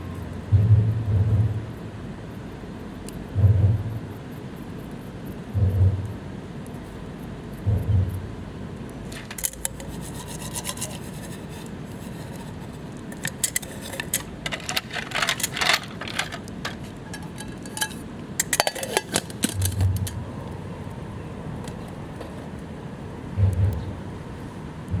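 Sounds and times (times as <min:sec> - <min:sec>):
low thump: 0:00.5 - 0:01.6
scraping and rubbing: 0:09.1 - 0:20.2.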